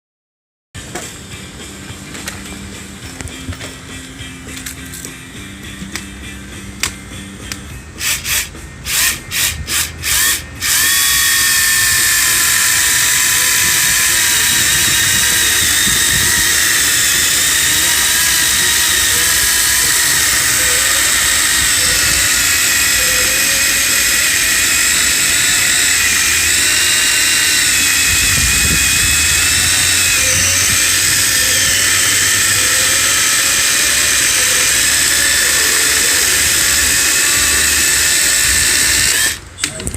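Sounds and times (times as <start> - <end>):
electric chainsaw cutting wood: 8.0 - 39.5.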